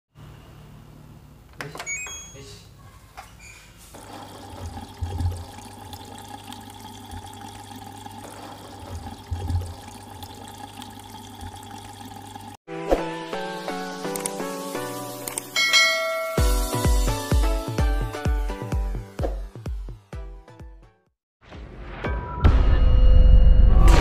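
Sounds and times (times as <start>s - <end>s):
electrical hum: 3.9s - 12.6s
water running into washing machine: 3.9s - 12.6s.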